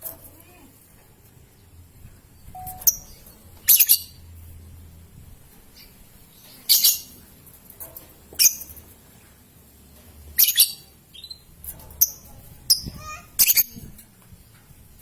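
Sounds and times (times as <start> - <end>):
lovebird chirping calls: 2.5 - 4.2, 5.8 - 7.1, 10.4 - 11.4, 12.0 - 13.8.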